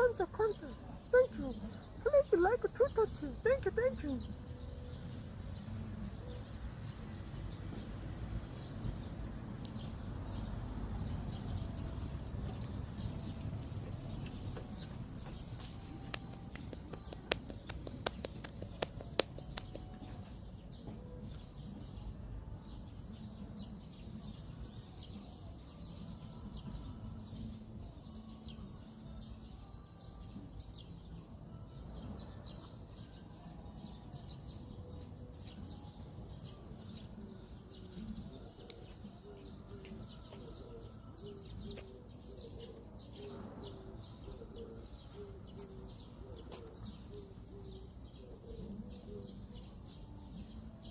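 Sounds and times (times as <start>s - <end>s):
birds calling faintly: 0.0s - 50.9s
sharp clicks: 16.0s - 20.0s.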